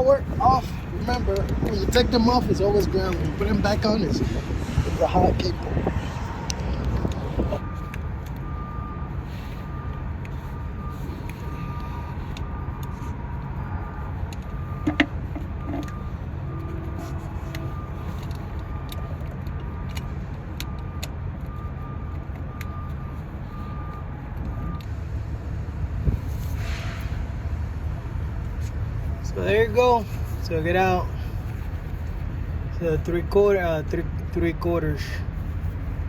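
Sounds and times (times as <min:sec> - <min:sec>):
vehicle engine rumbling: 0:00.0 - 0:36.0.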